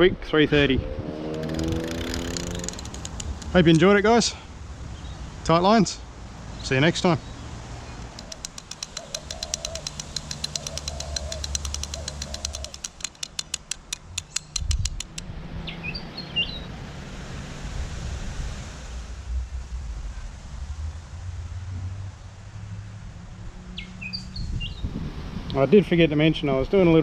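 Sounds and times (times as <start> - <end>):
fast sharp clicks: 1.3 - 4.0, 8.0 - 15.2
high bird chirps: 7.9 - 16.6
dove cooing: 8.0 - 13.8.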